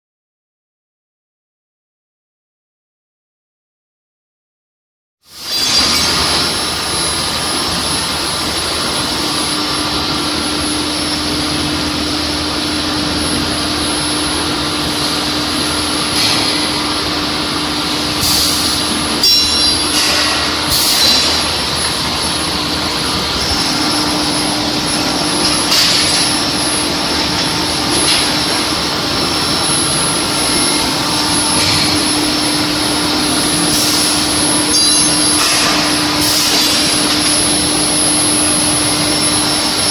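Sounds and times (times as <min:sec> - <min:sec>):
thin high whine: 0:05.4 - 0:39.9
machine hum: 0:05.6 - 0:39.9.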